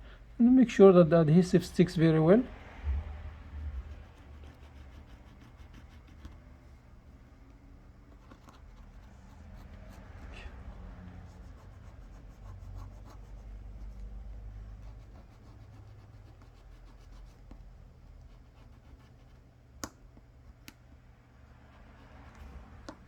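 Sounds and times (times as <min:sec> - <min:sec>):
steady low hum: 0:00.0 - 0:23.0
faint scratching and rubbing: 0:03.5 - 0:06.8, 0:08.0 - 0:19.5.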